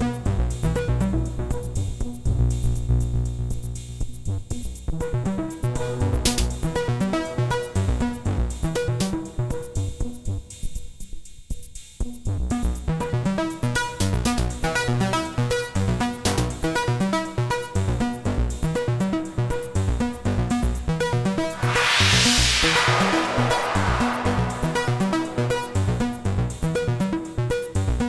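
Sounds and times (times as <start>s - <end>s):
hissing noise riser: 21.4s - 26.6s.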